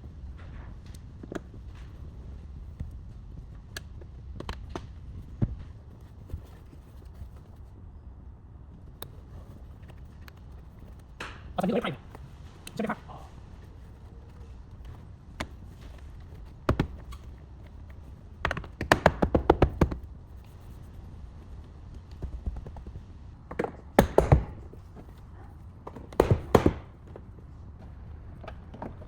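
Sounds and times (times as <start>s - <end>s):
sharp taps and knocks: 14.3s - 20.9s, 21.8s - 25.2s, 25.8s - 27.2s.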